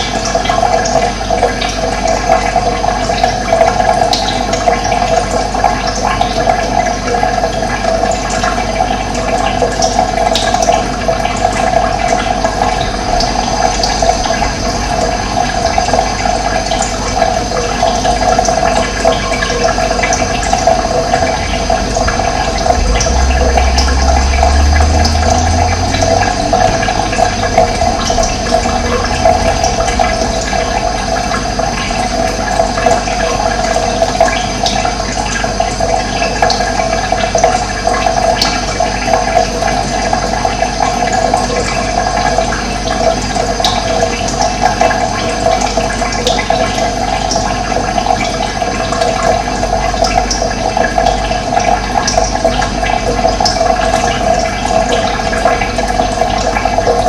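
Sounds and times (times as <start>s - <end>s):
water rushing: 0.0s - 57.0s
low rumble: 12.2s - 17.3s, 19.6s - 33.9s.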